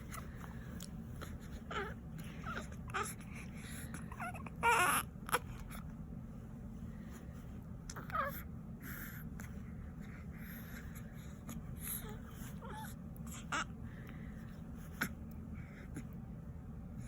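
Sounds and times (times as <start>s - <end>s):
baby whimpering: 4.0s - 5.5s.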